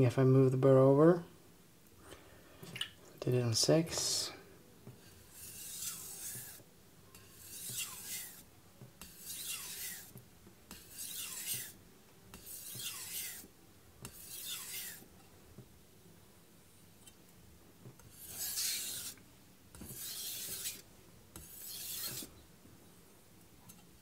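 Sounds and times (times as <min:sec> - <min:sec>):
knife scraping on whetstone: 0:05.0 - 0:15.1, 0:18.0 - 0:20.8, 0:21.4 - 0:22.3.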